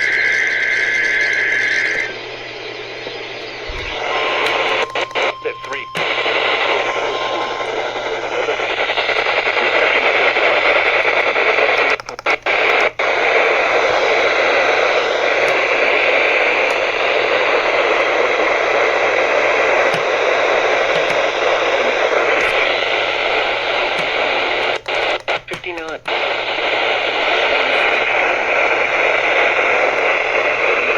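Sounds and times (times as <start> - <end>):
faint steady tone: 0.0 - 11.7
radio static hiss: 0.0 - 30.9.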